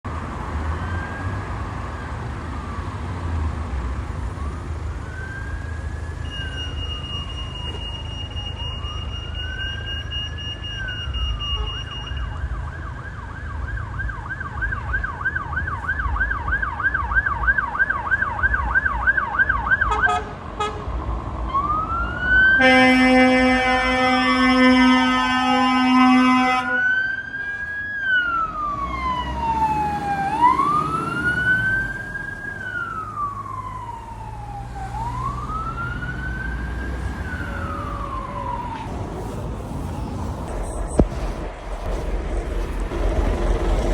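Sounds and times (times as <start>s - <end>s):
engine and road rumble: 0.0s - 43.9s
fire engine siren: 0.1s - 20.8s, 21.4s - 43.9s
loud air horn blast: 22.6s - 26.9s.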